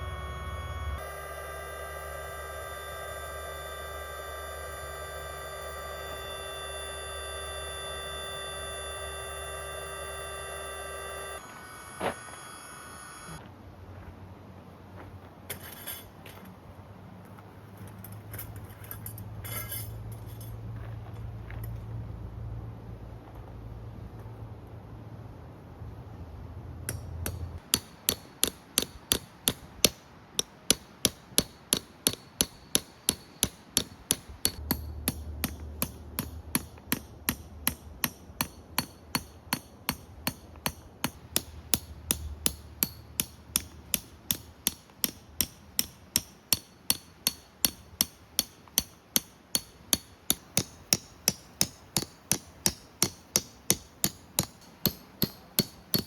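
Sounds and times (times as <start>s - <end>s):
hand hammering: 26.9s - 56.0s.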